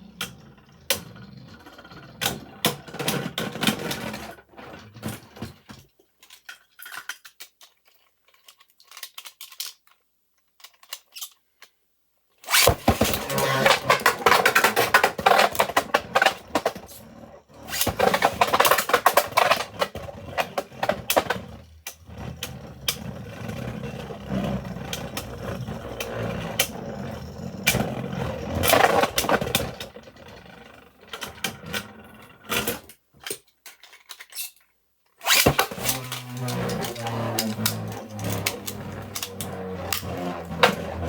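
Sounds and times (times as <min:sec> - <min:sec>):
spinning tops whirring and clashing: 0:12.5 - 0:14.9, 0:35.2 - 0:41.0.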